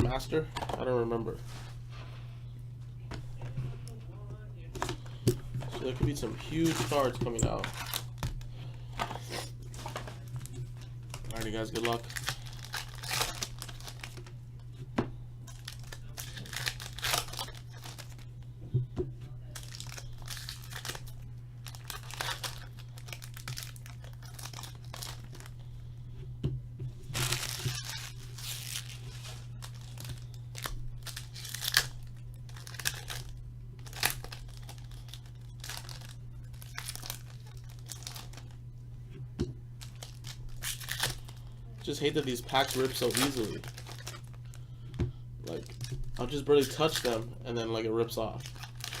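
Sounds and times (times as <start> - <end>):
low hum: 0.0 - 49.0
card pack wrappers tearing: 4.8 - 14.3, 15.5 - 18.3, 19.5 - 25.6, 27.1 - 38.6, 39.8 - 44.4, 45.4 - 47.3, 48.1 - 49.0.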